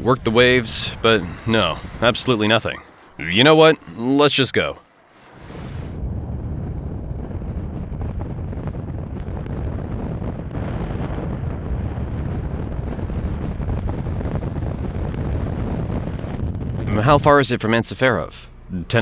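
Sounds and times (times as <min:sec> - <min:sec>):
wind buffeting microphone: 0:05.4 - 0:16.9.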